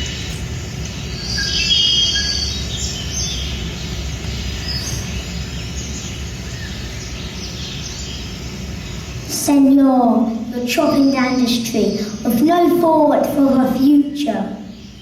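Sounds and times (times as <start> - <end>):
bird chirps and whistles: 1.1 - 3.6.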